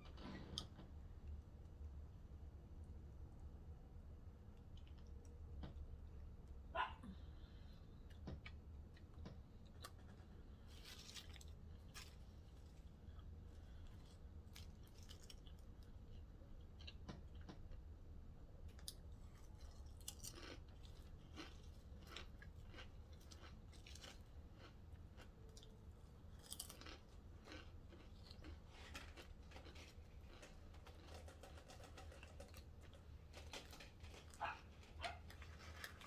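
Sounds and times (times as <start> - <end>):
chewing sandwich: 4.5 - 6.0, 7.6 - 36.0.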